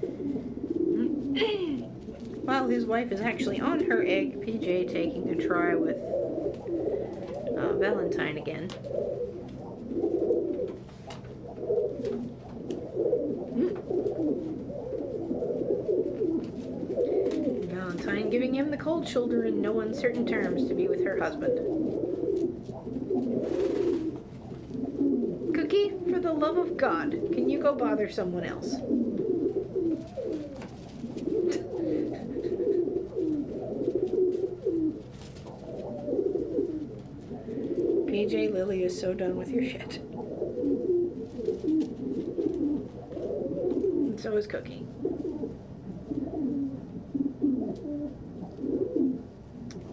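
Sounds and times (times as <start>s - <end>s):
pigeons cooing: 0.0s - 49.9s.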